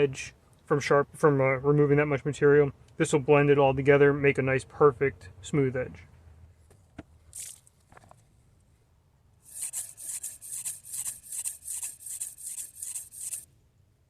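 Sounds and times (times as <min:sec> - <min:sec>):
knife scraping on whetstone: 0:09.5 - 0:13.5.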